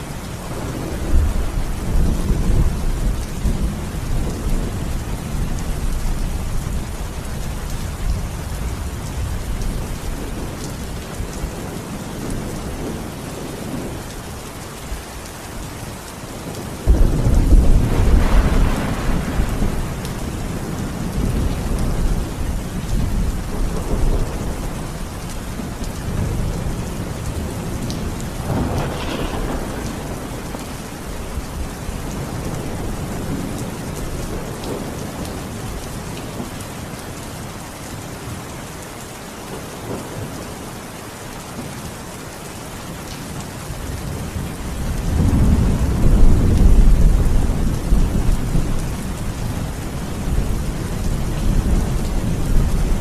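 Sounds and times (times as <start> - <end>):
steady rain falling: 0.0 - 53.0
rolling thunder: 16.7 - 24.9, 25.6 - 35.4, 44.0 - 53.0.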